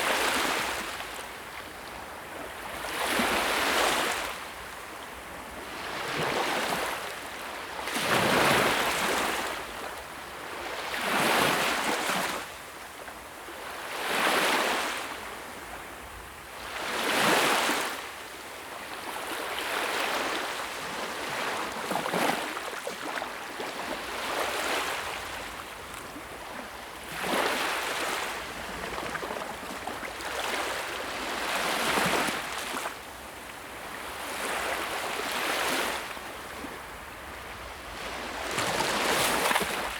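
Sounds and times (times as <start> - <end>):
sea waves breaking on shore: 18.9 - 39.9.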